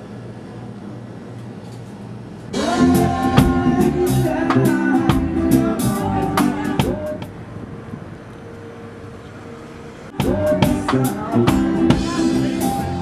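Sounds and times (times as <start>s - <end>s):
music with drums and guitar: 2.6s - 7.3s, 10.2s - 13.0s.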